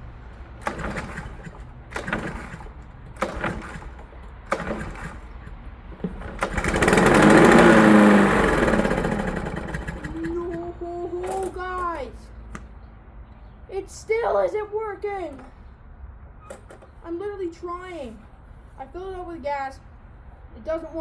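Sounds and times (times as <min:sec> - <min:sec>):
lawn mower engine running: 0:00.0 - 0:12.0
lawn mower pull-start cranking: 0:00.5 - 0:12.0.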